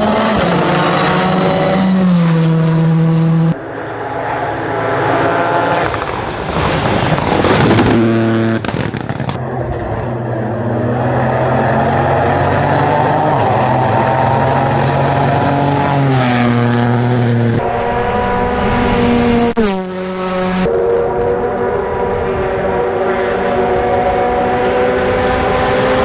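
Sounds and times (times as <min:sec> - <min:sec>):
rally car engines revving: 0:00.0 - 0:26.0.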